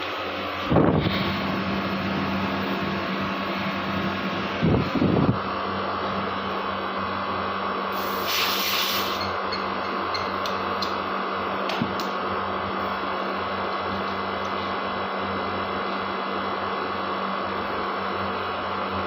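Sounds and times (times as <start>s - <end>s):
air conditioner humming: 0.0s - 19.0s
brief hiss: 8.0s - 9.2s.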